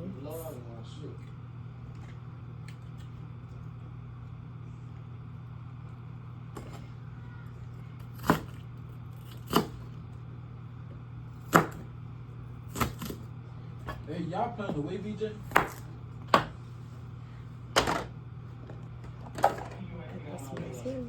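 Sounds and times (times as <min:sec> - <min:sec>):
steady low hum: 0:00.0 - 0:21.0
knife chopping on cutting board: 0:08.1 - 0:08.6, 0:09.2 - 0:09.9, 0:11.4 - 0:11.9, 0:12.7 - 0:14.1, 0:14.7 - 0:16.6.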